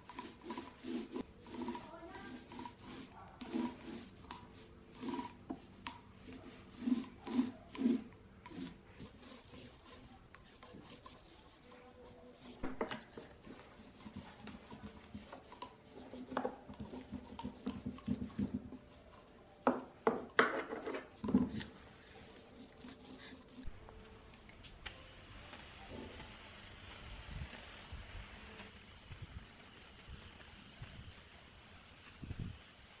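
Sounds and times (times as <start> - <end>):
rubbing and scraping on wood: 0.0 - 23.8.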